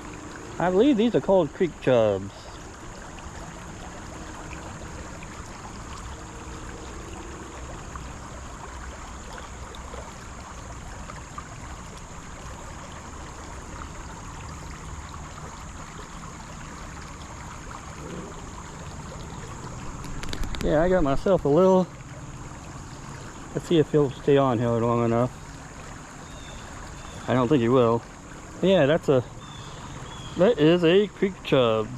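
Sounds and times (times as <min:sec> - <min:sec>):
creek water flowing: 0:00.0 - 0:31.9.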